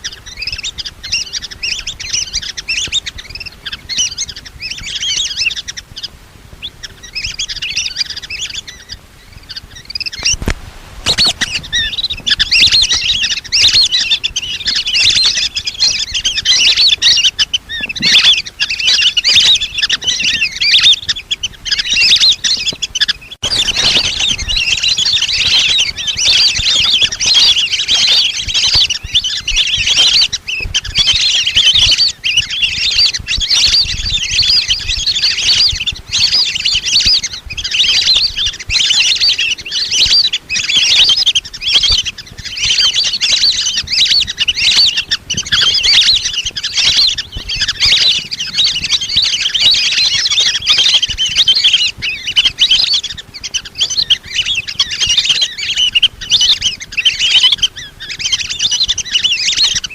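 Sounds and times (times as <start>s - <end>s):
ducks whistling chorus: 0.0s - 59.9s.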